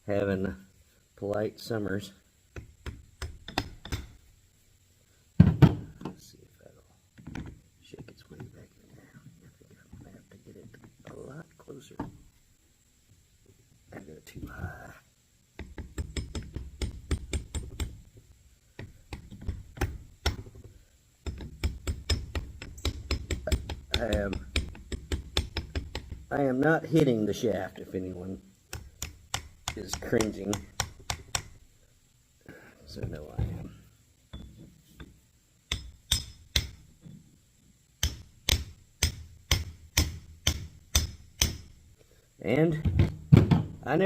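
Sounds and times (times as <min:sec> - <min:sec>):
hammer tapping metal part: 0:02.6 - 0:04.2, 0:15.6 - 0:18.0, 0:18.8 - 0:26.3, 0:28.7 - 0:31.6, 0:34.3 - 0:36.9, 0:38.0 - 0:41.8.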